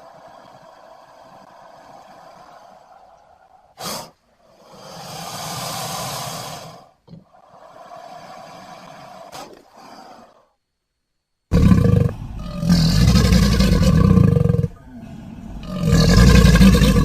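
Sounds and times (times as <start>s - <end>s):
cartoon creature breathing: 0.0s - 10.6s.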